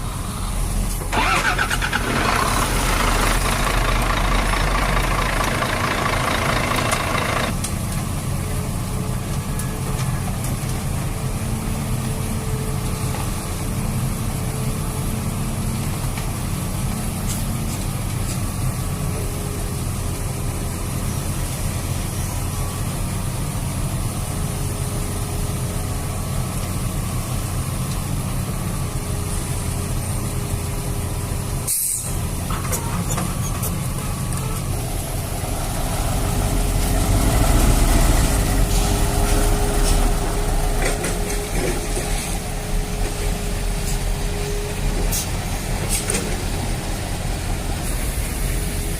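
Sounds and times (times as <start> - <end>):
truck engine idling: 0.0 - 48.9
high hiss: 31.4 - 32.5.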